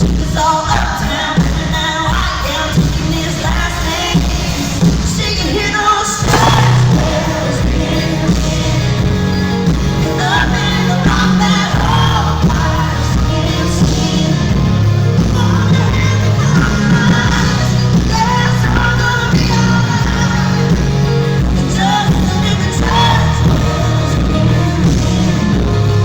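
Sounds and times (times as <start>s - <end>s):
woman singing lead vocal: 0.0s - 26.0s
amplified band playing: 6.2s - 26.0s
steady bass line: 6.3s - 26.0s.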